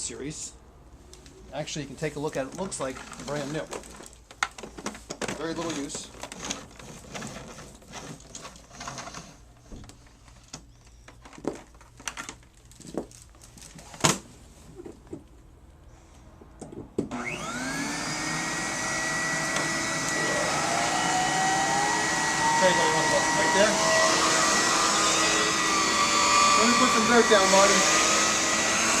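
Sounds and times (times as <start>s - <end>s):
vacuum cleaner motor whine: 17.1s - 29.0s.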